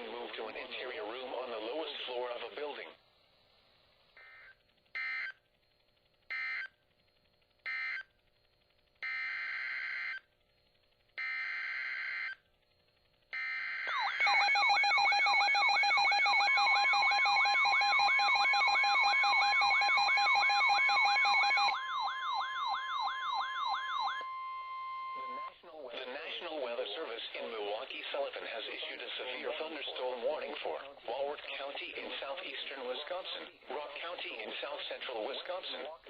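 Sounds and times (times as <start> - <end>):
alarms sweeping up and down: 13.4 - 25.5
steady warning alarm tone: 13.4 - 25.6.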